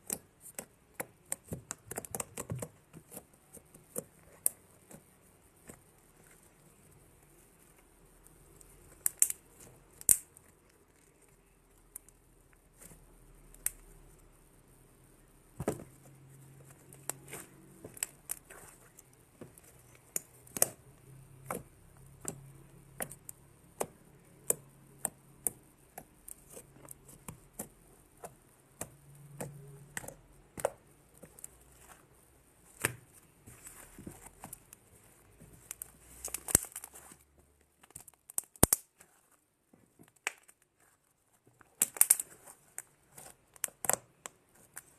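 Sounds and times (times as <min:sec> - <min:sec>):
slime squishing with wet clicks: 0:08.2 - 0:13.9, 0:16.7 - 0:32.0, 0:41.6 - 0:44.9.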